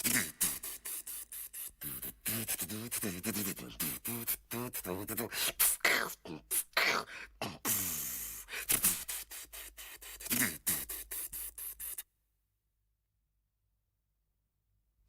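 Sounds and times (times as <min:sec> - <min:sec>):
hissing rubbing sounds: 0:00.0 - 0:05.8, 0:07.7 - 0:12.0
wordless vocal noises: 0:00.0 - 0:12.0.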